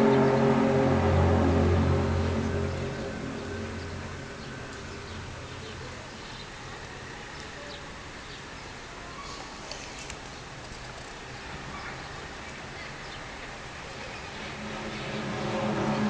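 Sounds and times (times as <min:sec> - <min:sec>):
low droning hum: 0:00.0 - 0:06.8, 0:14.1 - 0:16.0
outdoor background noise: 0:00.0 - 0:16.0.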